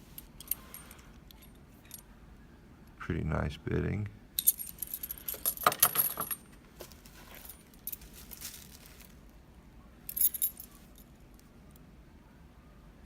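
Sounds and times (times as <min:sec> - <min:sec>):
metal keys jingling: 0:00.1 - 0:02.0, 0:04.4 - 0:09.2, 0:10.1 - 0:11.3.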